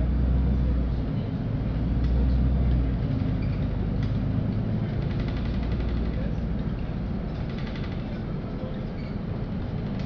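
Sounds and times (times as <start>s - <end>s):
bus engine and road rumble: 0.0s - 10.0s
faint rattles: 3.0s - 10.0s.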